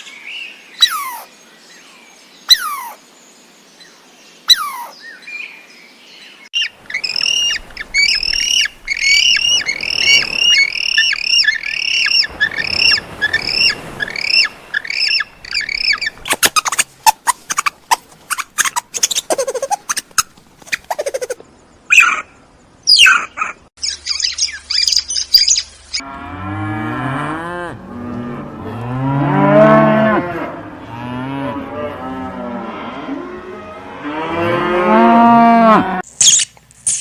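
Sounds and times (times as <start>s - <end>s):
birds chirping and squawking: 0.8s - 1.3s, 2.5s - 3.0s, 4.5s - 5.2s, 6.6s - 25.7s.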